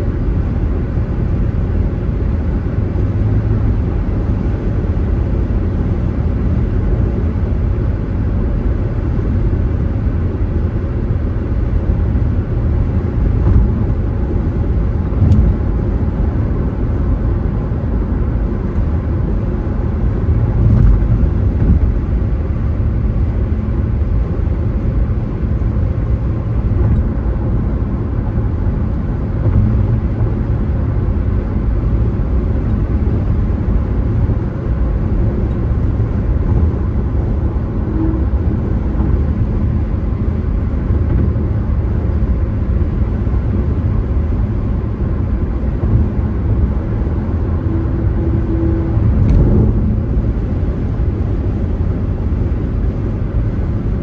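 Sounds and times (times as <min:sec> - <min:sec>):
car road and engine rumble: 0:00.0 - 0:54.0
soft bumps: 0:13.2 - 0:14.1, 0:15.1 - 0:15.9, 0:20.5 - 0:22.4, 0:29.3 - 0:30.5.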